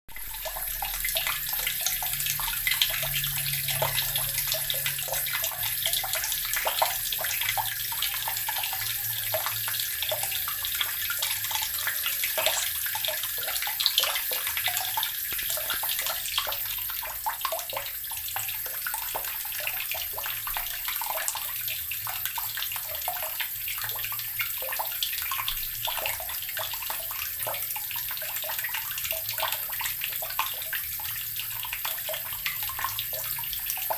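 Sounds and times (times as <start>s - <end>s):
tap water running and splashing: 0.1s - 33.9s.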